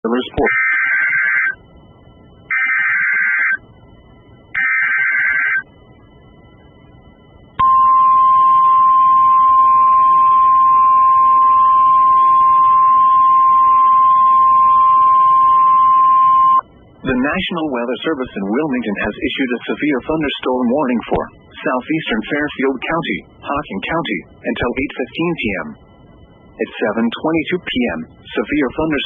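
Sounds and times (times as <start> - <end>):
rasping digital data bursts: 4.5 - 5.8
piercing attention tone: 7.6 - 29.0.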